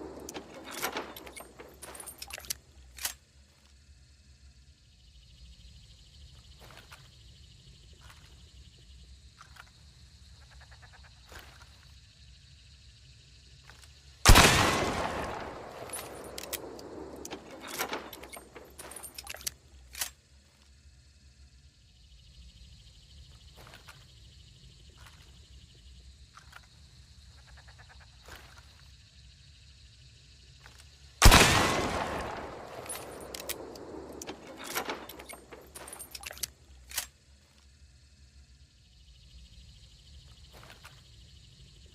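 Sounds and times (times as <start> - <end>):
rifle shot: 14.2 - 19.1, 31.2 - 36.4
rifle action clicking: 14.3 - 20.1, 31.2 - 37.1.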